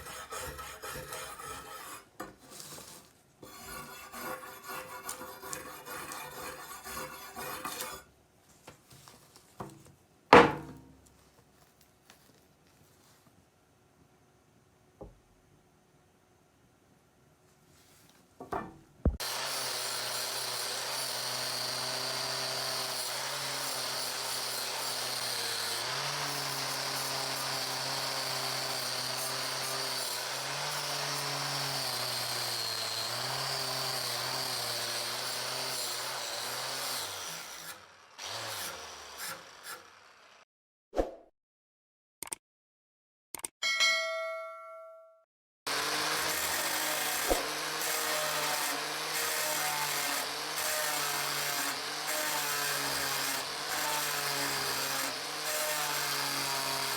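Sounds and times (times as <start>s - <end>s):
power tool grinding knife: 0.0s - 8.1s, 19.2s - 40.5s, 45.7s - 56.9s.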